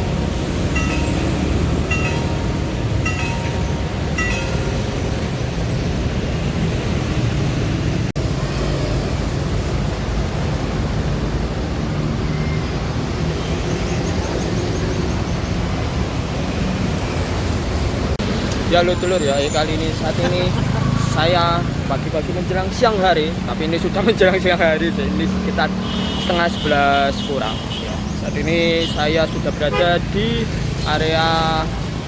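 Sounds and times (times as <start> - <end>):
crossing bell ringing: 0.0 - 6.7
rumble of passing vehicles: 0.0 - 32.0.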